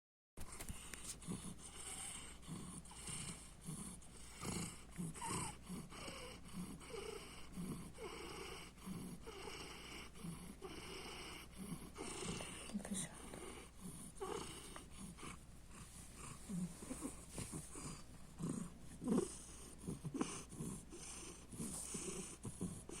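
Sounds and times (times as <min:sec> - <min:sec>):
cat purring: 0:00.5 - 0:23.0.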